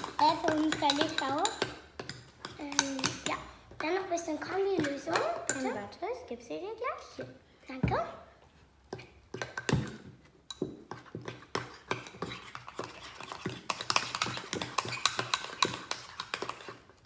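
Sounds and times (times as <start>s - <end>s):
utensil scraping a bowl: 10.6s - 17.0s.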